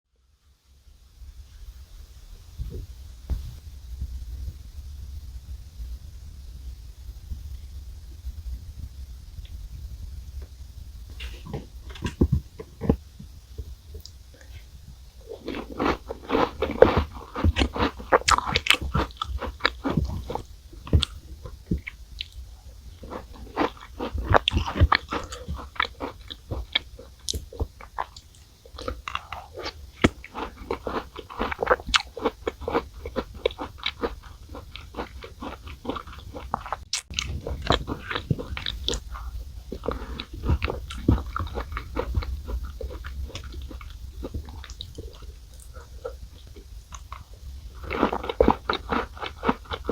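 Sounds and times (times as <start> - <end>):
cookie crunching and chewing: 11.1 - 49.9.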